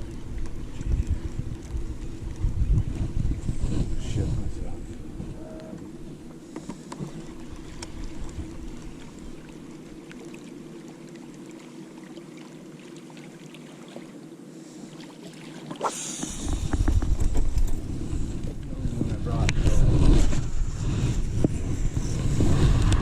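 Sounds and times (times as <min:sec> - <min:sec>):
wind buffeting microphone: 0:00.0 - 0:06.2, 0:16.2 - 0:23.0
boat engine humming: 0:00.0 - 0:23.0.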